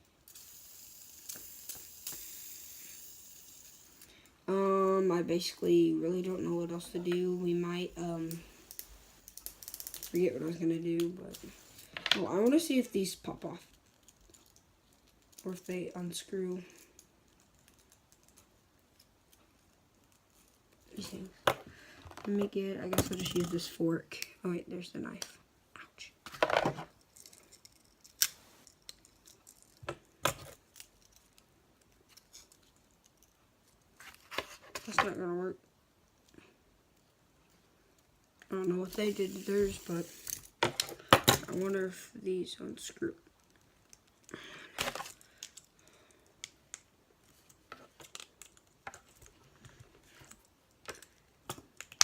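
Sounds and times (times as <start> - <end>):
fidget spinner clicks and taps: 0.3 - 4.1, 38.4 - 41.8.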